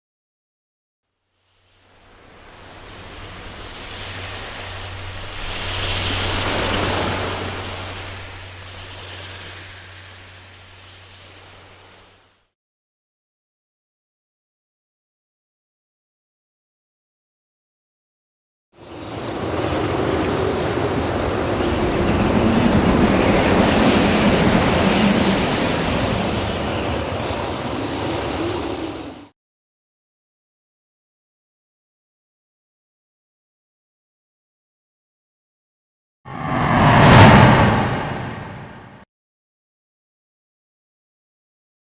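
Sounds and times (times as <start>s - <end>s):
rushing wind or surf: 1.8s - 12.2s, 18.8s - 29.3s, 36.3s - 39.0s.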